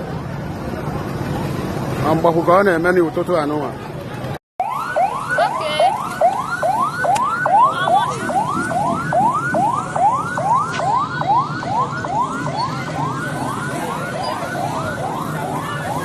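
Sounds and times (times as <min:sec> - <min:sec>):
electronic siren yelping: 0:04.6 - 0:16.0.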